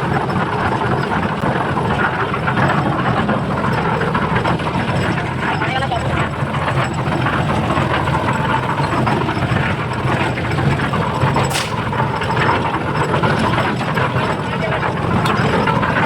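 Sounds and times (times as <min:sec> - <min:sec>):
engine running: 0:00.0 - 0:16.0
sharp click: 0:11.5 - 0:11.9.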